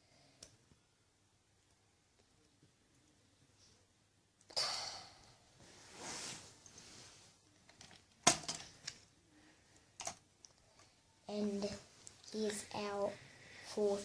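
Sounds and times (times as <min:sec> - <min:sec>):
plastic toy pieces rustling: 0:07.7 - 0:09.0.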